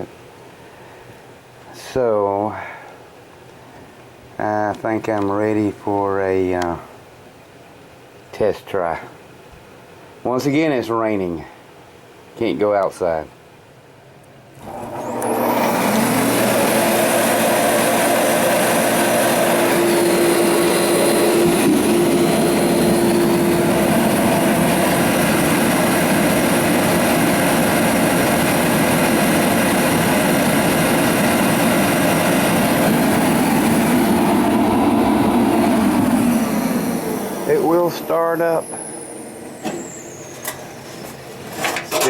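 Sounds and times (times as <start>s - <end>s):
heater blower motor whining: 14.6s - 42.0s.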